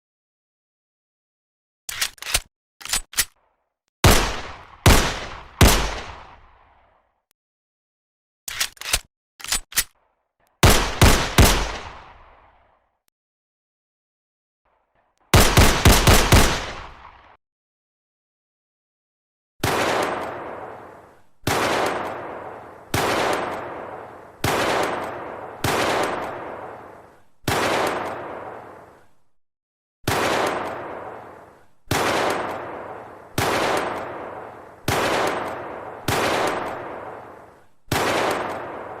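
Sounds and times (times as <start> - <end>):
pistol shots with echo: 4.0 - 6.7, 10.6 - 12.4, 15.4 - 17.4, 30.1 - 39.0.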